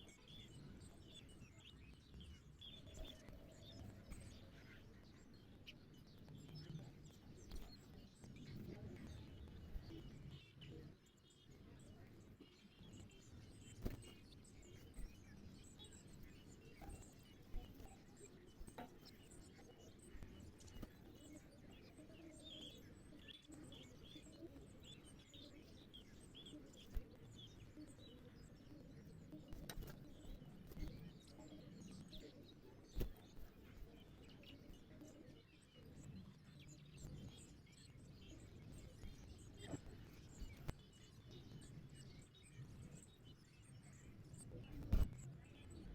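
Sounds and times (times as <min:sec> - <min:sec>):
small birds chirping: 0:00.0 - 0:45.9.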